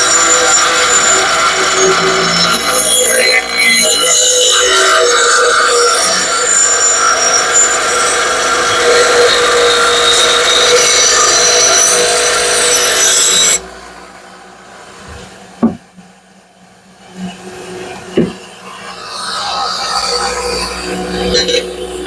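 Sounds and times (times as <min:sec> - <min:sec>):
power grinder grinding metal: 0:00.0 - 0:14.2, 0:17.1 - 0:22.0
short knock: 0:15.6 - 0:15.9, 0:18.2 - 0:18.4.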